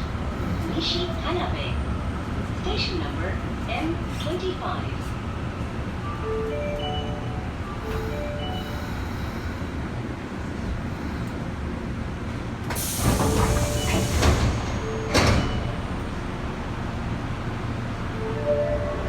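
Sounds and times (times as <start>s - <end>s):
standing train hum: 0.0s - 19.0s
rush of air from doors: 12.6s - 16.0s.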